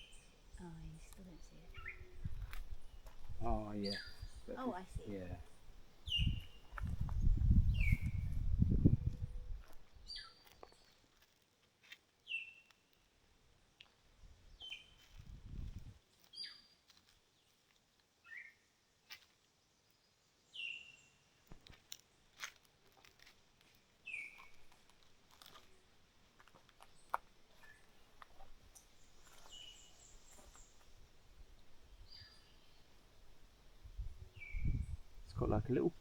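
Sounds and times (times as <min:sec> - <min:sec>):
birds chirping: 0:00.0 - 0:11.0, 0:24.0 - 0:24.7, 0:26.8 - 0:36.0
bird trill: 0:03.7 - 0:04.8.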